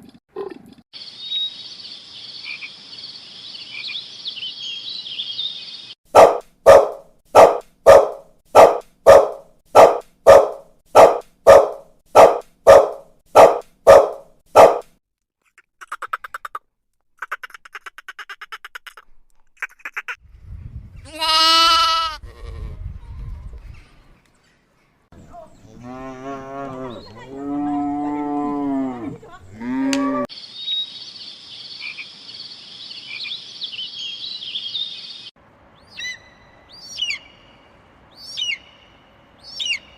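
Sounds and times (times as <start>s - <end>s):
evenly spaced animal calls: 6.2s - 14.9s.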